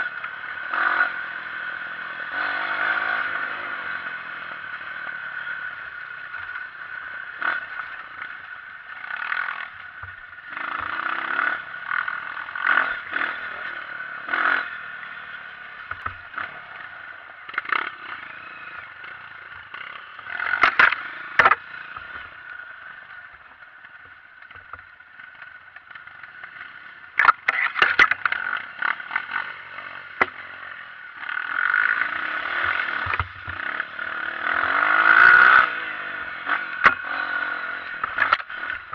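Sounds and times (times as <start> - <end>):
motorcycle engine running: 0.0 - 38.9
bike clattering over rough ground: 20.4 - 21.7, 27.2 - 29.3.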